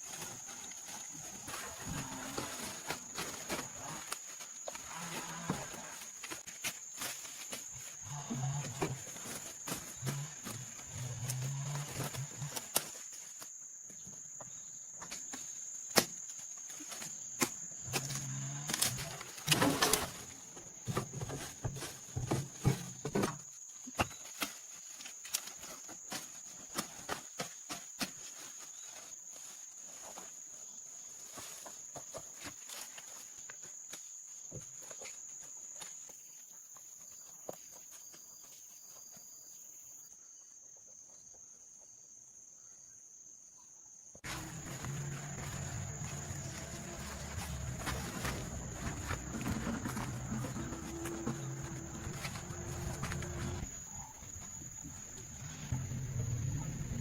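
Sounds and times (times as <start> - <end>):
insects trilling: 0.0 - 43.3, 44.1 - 57.0
cow mooing: 49.8 - 53.7.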